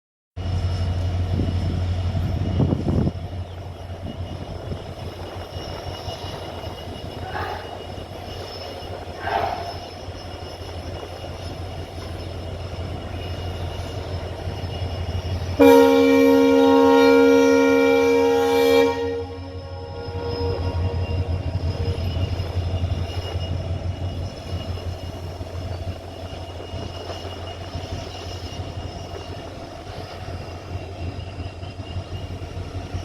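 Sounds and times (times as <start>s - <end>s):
diesel locomotive engine humming: 0.4s - 33.0s
loud multi-pitched horn: 15.6s - 21.2s.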